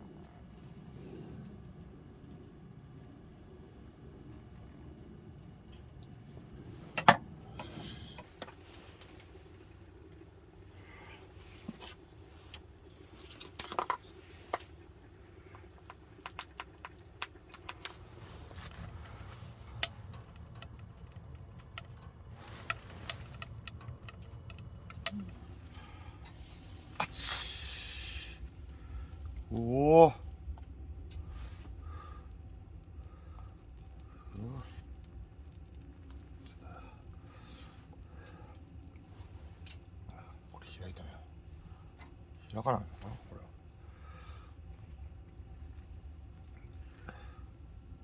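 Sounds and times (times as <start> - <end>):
faint low hum: 0.0 - 48.0
rustling hiss: 25.0 - 39.8.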